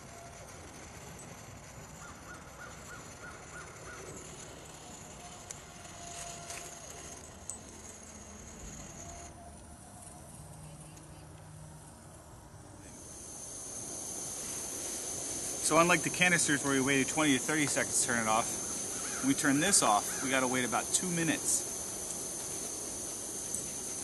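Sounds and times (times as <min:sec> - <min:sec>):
camping stove hissing: 0:00.0 - 0:11.1, 0:12.8 - 0:24.0.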